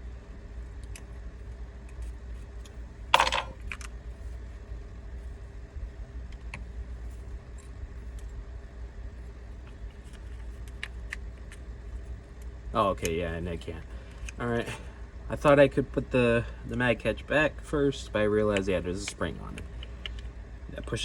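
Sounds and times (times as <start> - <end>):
steady low hum: 0.0 - 21.0
parts rattling: 3.1 - 3.8.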